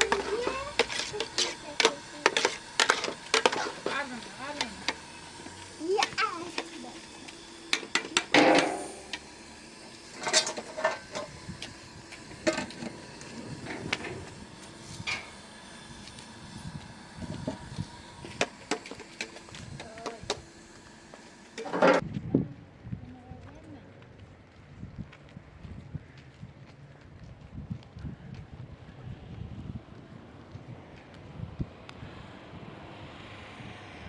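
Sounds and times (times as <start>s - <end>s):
objects knocking and clattering: 7.7s - 9.3s.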